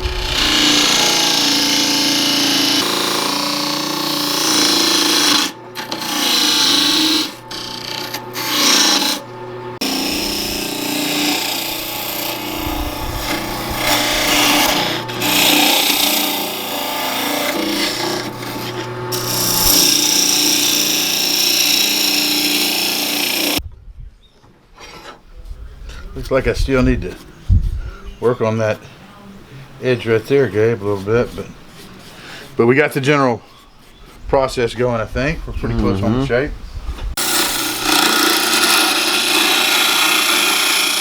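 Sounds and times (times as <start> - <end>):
gouge scraping spinning wood: 0.0 - 23.6, 37.2 - 41.0
lathe motor hum: 0.0 - 23.6, 37.2 - 41.0.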